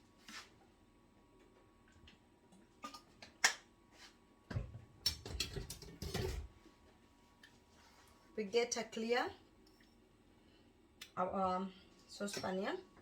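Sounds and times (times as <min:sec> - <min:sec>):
clattering and rubbing: 0:05.4 - 0:06.5.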